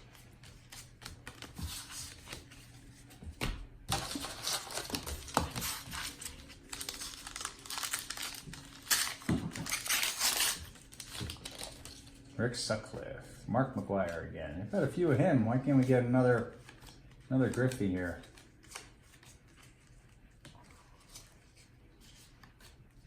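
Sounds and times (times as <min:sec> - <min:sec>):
foil pack tearing and crinkling: 0:03.9 - 0:12.1.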